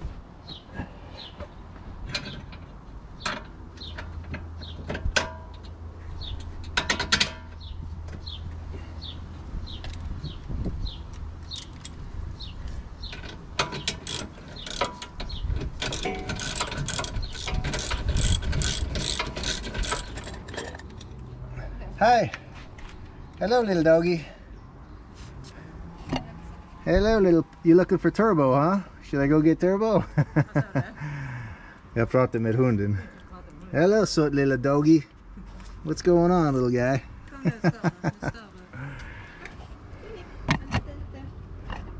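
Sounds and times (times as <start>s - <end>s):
hand tools clinking: 13.1s - 21.2s
ratchet clicking: 13.1s - 21.2s.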